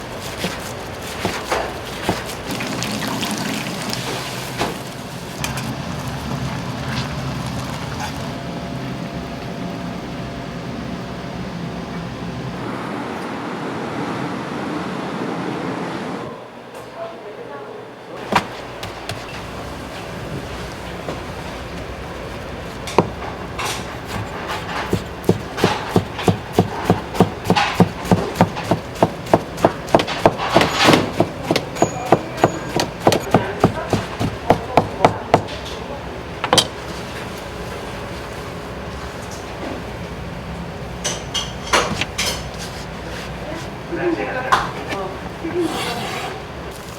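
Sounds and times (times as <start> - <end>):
knife chopping on cutting board: 0.4 - 2.4, 24.9 - 35.6.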